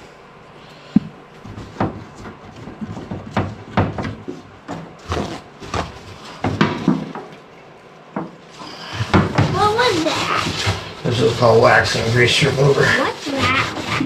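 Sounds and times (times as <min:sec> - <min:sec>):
objects knocking and clunking: 0:01.0 - 0:07.5, 0:08.1 - 0:11.7.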